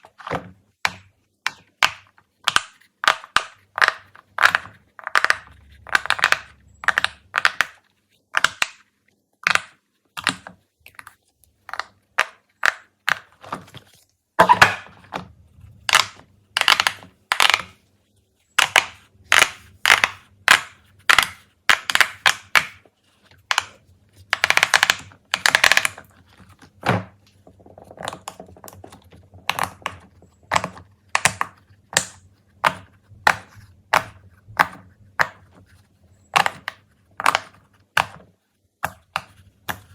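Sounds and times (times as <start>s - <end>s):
fidget toys popping and clicking: 0.8s - 8.8s, 15.8s - 17.8s, 18.6s - 22.8s, 23.5s - 26.1s, 29.4s - 35.4s, 36.3s - 38.2s.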